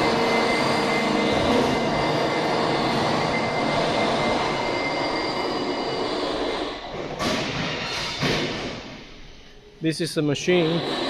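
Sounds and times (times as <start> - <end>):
faint high whine: 0.0 - 6.9
factory machinery running: 0.0 - 11.0.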